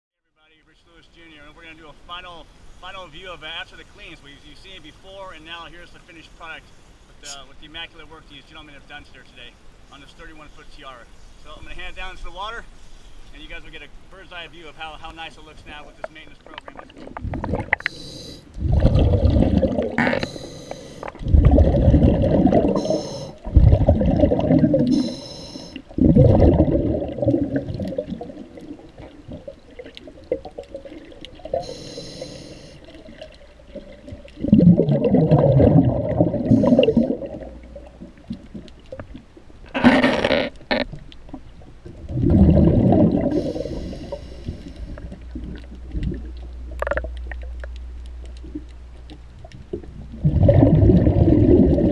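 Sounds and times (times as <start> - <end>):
underwater bubbles gurgling: 15.9 - 51.9.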